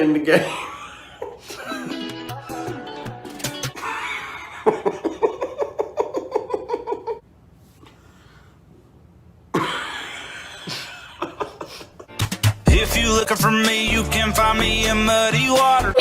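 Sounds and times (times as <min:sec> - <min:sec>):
person laughing: 0:00.4 - 0:07.2, 0:09.6 - 0:12.2, 0:15.8 - 0:16.0.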